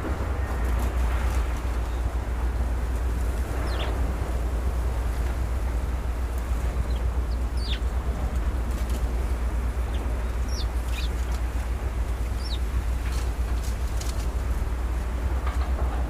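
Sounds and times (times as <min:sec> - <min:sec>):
steady low rumble: 0:00.0 - 0:16.0
small birds chirping: 0:03.5 - 0:04.0, 0:05.8 - 0:14.3.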